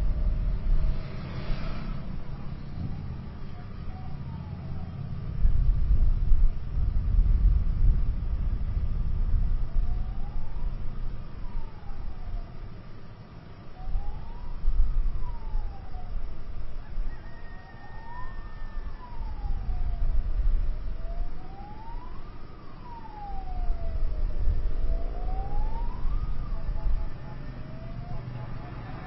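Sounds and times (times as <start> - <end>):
steady low rumble: 0.0 - 16.8, 18.8 - 28.6
emergency siren wailing: 0.9 - 5.3, 9.6 - 12.9, 13.5 - 29.0.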